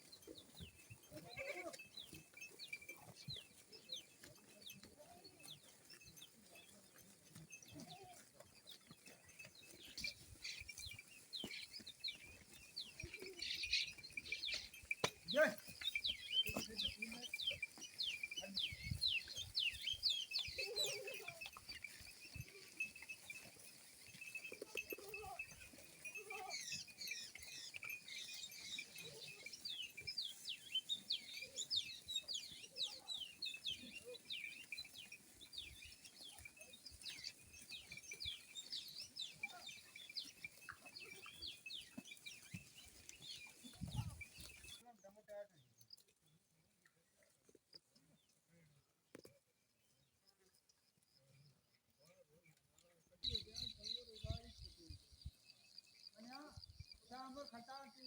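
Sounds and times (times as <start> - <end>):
small birds chirping: 0.0 - 46.7, 47.6 - 58.0
goats bleating: 1.1 - 2.0.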